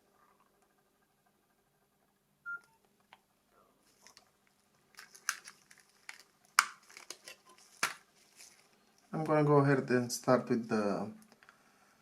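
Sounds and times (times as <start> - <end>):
phone electronic beep: 2.4 - 2.8.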